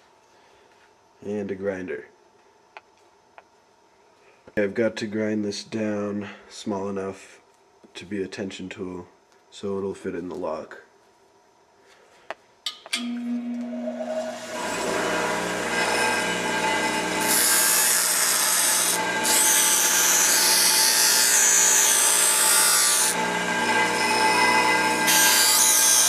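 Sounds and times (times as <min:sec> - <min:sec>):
high-pitched grinding of steel blade: 0:12.7 - 0:26.0
electric grinder running: 0:13.6 - 0:26.0.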